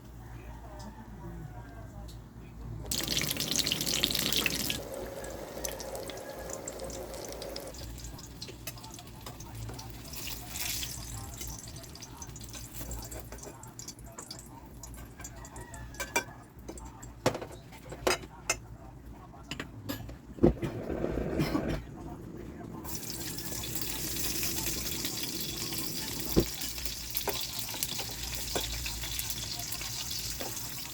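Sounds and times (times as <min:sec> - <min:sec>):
running water splashing: 0:02.9 - 0:08.2.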